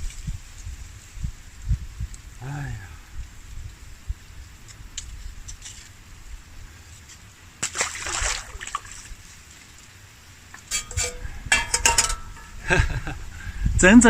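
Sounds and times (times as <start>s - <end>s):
water sloshing and splashing: 7.6s - 9.8s
low steady rumble: 10.5s - 13.6s.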